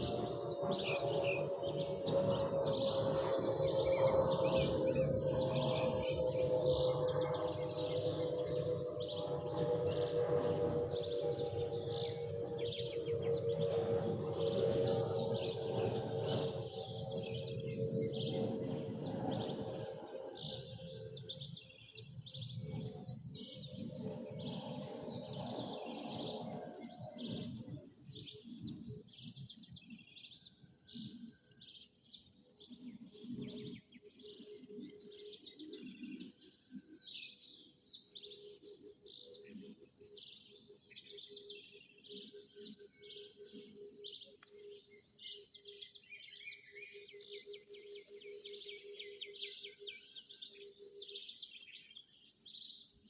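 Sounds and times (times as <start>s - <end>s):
high-pitched insect drone: 0.0s - 17.3s.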